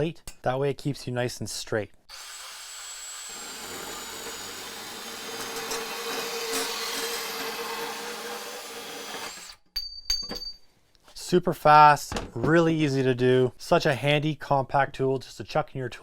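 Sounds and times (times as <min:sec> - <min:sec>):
bandsaw cutting: 0:02.1 - 0:09.6.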